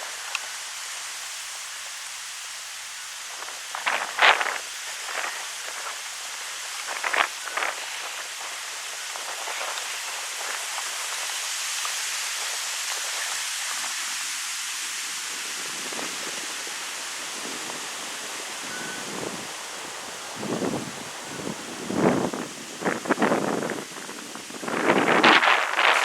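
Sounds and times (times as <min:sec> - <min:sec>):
wind rustling birch leaves: 0:00.0 - 0:26.0.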